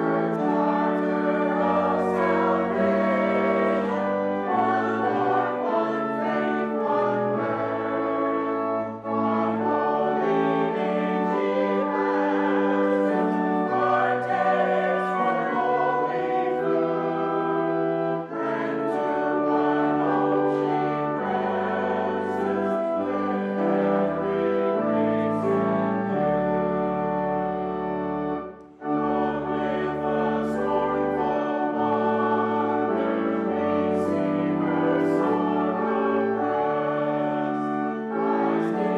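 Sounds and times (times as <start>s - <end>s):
congregation singing a hymn: 0.0s - 38.9s
organ accompaniment: 0.0s - 38.9s.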